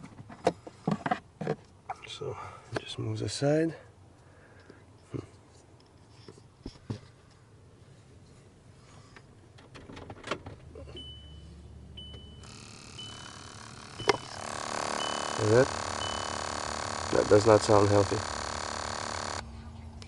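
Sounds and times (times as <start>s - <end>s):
high warning chime: 11.0s - 19.4s
servo motor whirring: 12.4s - 19.4s.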